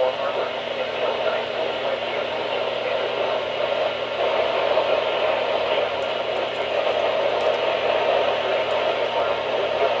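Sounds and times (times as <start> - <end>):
radio static hiss: 0.0 - 10.0.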